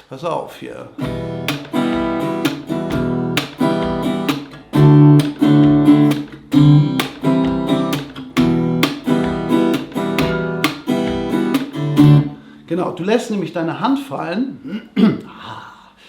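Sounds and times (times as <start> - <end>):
percussive slaps on guitar strings: 1.0 - 12.4
acoustic guitar strumming: 1.0 - 12.7.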